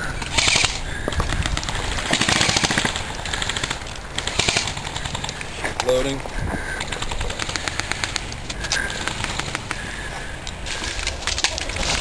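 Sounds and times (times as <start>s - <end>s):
airsoft guns firing bursts: 1.4s - 5.4s, 6.9s - 9.8s.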